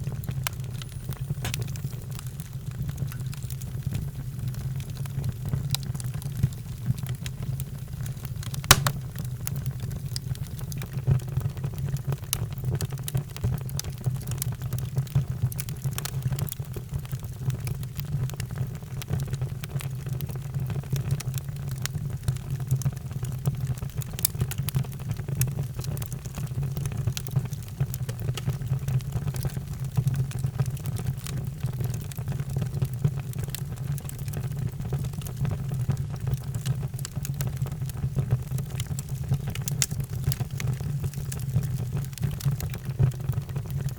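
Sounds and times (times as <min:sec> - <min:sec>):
wood fire crackling and popping: 0:00.0 - 0:43.9.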